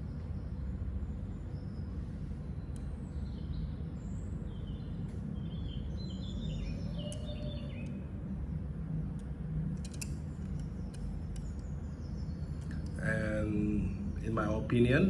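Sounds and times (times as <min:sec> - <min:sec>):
low background rumble: 0:00.0 - 0:15.0
small birds chirping: 0:00.0 - 0:15.0
faint clicks: 0:07.1 - 0:08.0, 0:09.1 - 0:11.7, 0:12.6 - 0:13.0.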